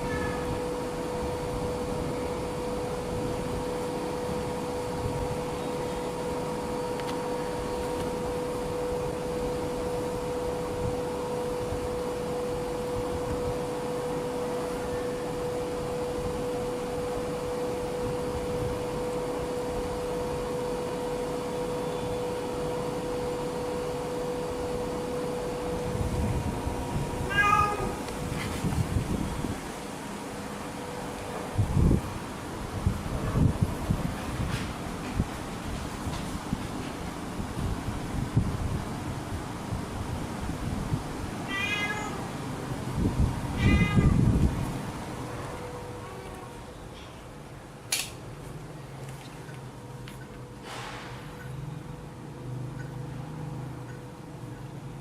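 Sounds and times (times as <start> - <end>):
steady hum: 0.0 - 55.0
kitten meowing: 27.3 - 28.0, 41.5 - 42.2, 43.6 - 44.2.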